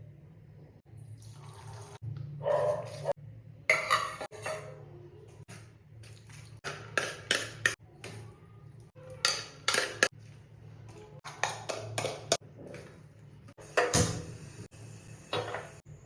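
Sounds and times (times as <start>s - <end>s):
metal utensils clinking on cookware: 3.7s - 4.8s, 6.7s - 7.8s, 9.1s - 10.1s, 15.3s - 15.8s.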